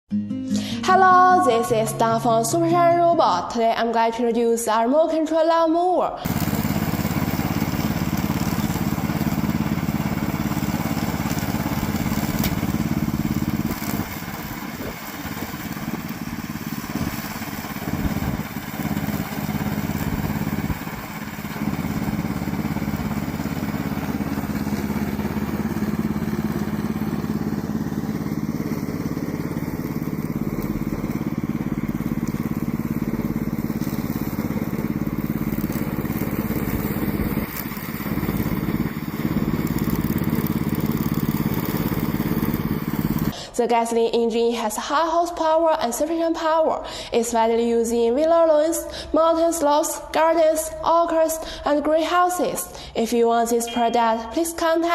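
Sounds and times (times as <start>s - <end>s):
petrol mower engine running: 6.2s - 43.4s.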